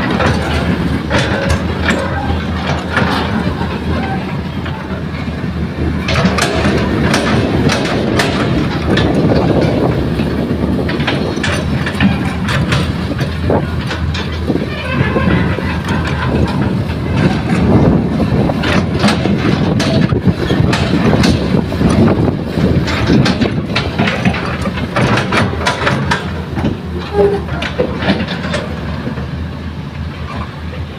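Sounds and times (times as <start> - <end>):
diesel engine under load: 0.0 - 30.9
falling earth: 0.0 - 30.9.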